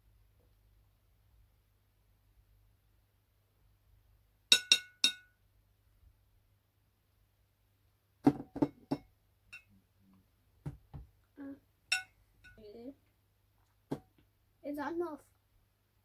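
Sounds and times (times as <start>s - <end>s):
dull knocks and taps: 10.6s - 11.1s.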